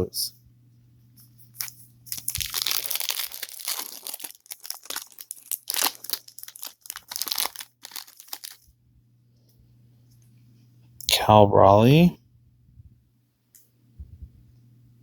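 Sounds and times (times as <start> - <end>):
wrapper crinkling and crunching: 1.5 - 8.6.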